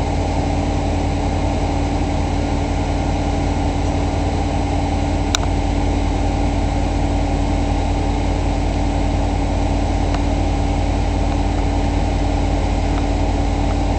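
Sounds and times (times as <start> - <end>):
diesel train engine idling: 0.0 - 13.9
sharp click: 5.3 - 5.6.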